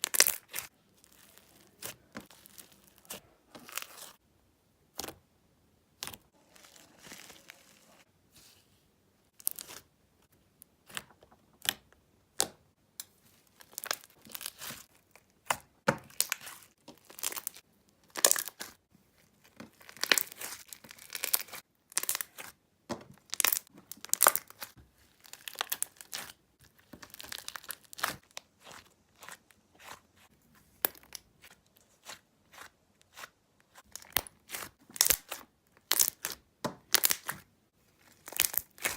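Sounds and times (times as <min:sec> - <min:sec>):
crunchy slime crackling and popping: 0:00.0 - 0:04.2, 0:06.0 - 0:08.0, 0:13.5 - 0:18.8, 0:19.4 - 0:30.0, 0:30.7 - 0:38.9.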